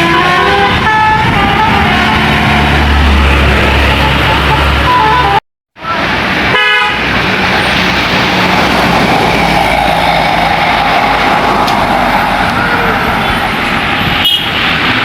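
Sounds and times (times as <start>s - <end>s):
bus horn toot: 0.0s - 3.0s, 3.8s - 5.4s, 6.5s - 7.1s, 14.0s - 14.6s
bus engine and road noise: 0.0s - 15.0s.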